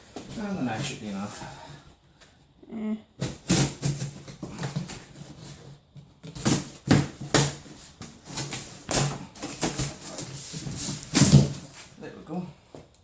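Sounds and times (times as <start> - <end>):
knife cutting cardboard box: 3.2 - 11.7.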